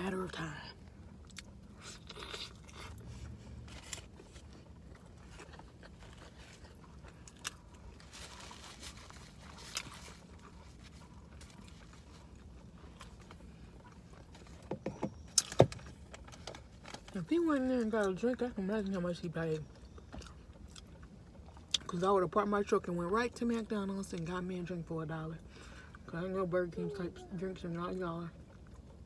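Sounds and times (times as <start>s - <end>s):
faint low hum: 0.0s - 29.0s
person crunching and chewing: 1.1s - 14.6s, 19.7s - 21.9s.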